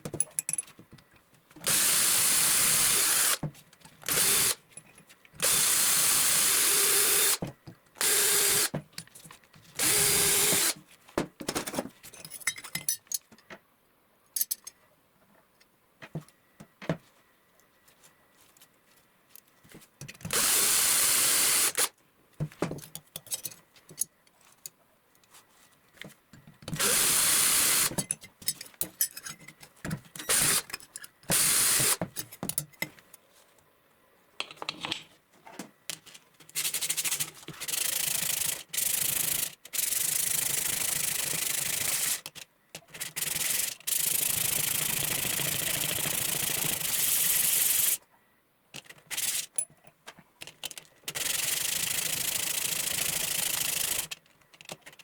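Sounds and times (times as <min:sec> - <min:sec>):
handling clicks and knocks: 0:32.0 - 0:33.2, 0:34.4 - 0:36.6.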